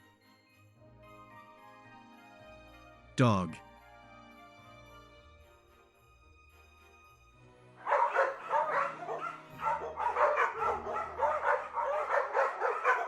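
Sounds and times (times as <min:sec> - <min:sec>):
dog yipping and barking: 0:07.8 - 0:13.0.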